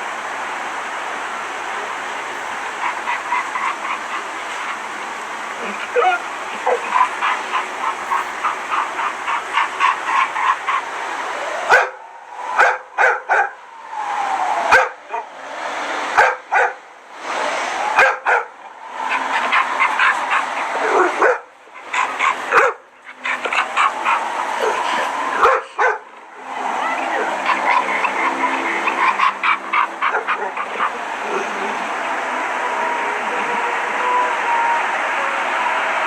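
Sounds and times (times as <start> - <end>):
dog barking: 5.7 - 10.8, 11.7 - 12.0, 12.6 - 13.6, 14.7 - 15.2, 16.2 - 16.8, 18.0 - 18.5, 19.1 - 26.1, 27.2 - 30.9.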